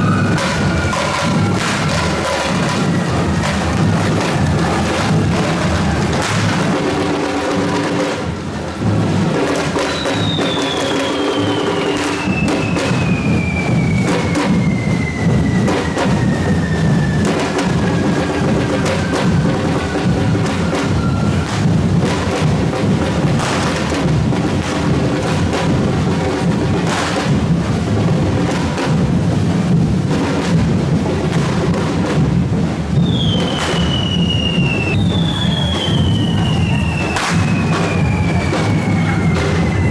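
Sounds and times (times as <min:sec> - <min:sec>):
falling firework whistle: 0:00.0 - 0:06.8, 0:09.6 - 0:22.6, 0:32.9 - 0:39.9
drum group playing: 0:00.0 - 0:39.9.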